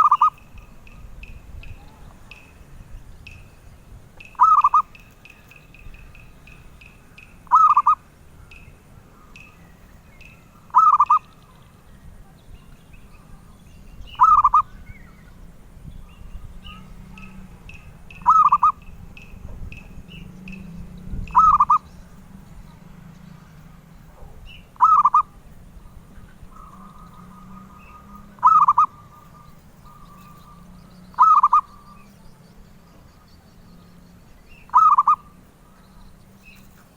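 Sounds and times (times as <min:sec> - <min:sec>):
dove cooing: 0:00.0 - 0:02.5, 0:04.2 - 0:08.1, 0:09.0 - 0:11.8, 0:14.1 - 0:15.4, 0:16.4 - 0:36.9
faint high chirps: 0:00.0 - 0:36.9.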